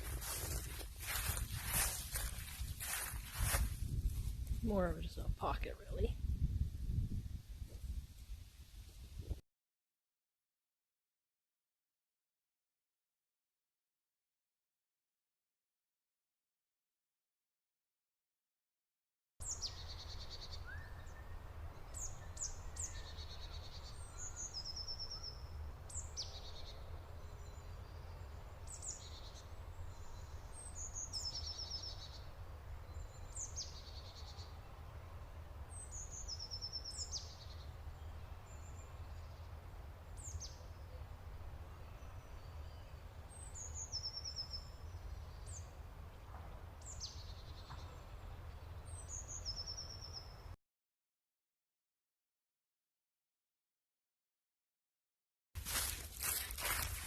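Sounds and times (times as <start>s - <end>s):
songbird singing: 0.0s - 7.2s, 19.4s - 50.6s.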